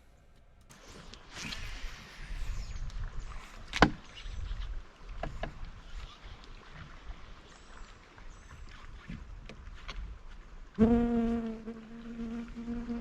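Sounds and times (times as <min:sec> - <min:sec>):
knocks and rattles in a boat: 0:05.1 - 0:06.0.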